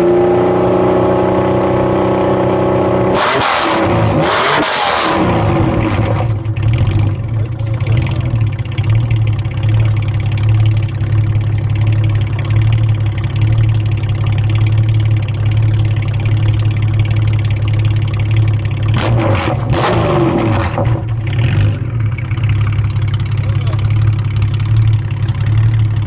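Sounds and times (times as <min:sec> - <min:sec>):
motorcycle engine idling: 0:06.2 - 0:19.0, 0:20.8 - 0:26.0.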